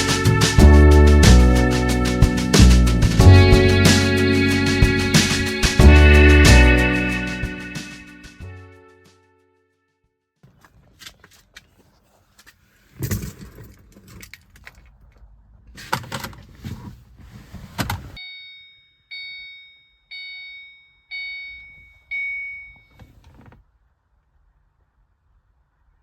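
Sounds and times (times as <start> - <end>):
handling clatter with knocks: 10.4 - 15.0
car warning chime dinging: 18.2 - 23.3.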